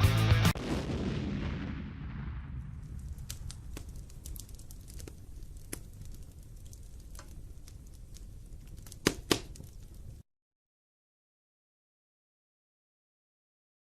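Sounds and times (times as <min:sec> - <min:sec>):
low rumble: 0:00.6 - 0:08.7
crackles and sharp clicks: 0:02.7 - 0:10.2.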